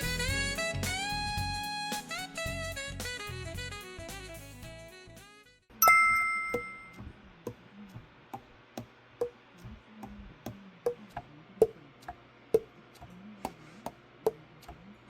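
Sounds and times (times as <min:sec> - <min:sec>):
saxophone music: 0:00.0 - 0:05.5
bright ding: 0:05.8 - 0:07.0.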